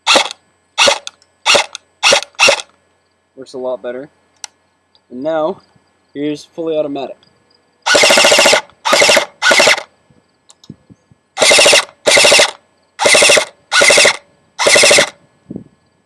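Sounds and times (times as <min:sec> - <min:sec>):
airsoft gun full-auto bursts: 0:00.0 - 0:02.7, 0:07.9 - 0:09.9, 0:11.4 - 0:15.2.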